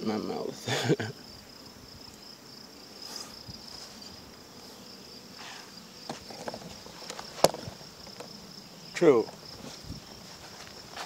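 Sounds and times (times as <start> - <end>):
high-pitched insect trill: 0.0 - 11.0
soft rustle: 3.0 - 4.8, 9.2 - 11.0.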